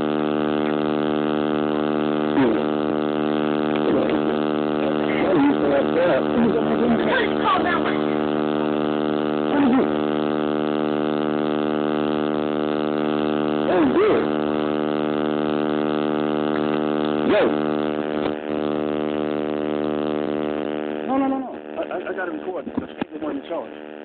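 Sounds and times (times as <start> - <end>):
loud electrical buzz: 0.0 - 24.0.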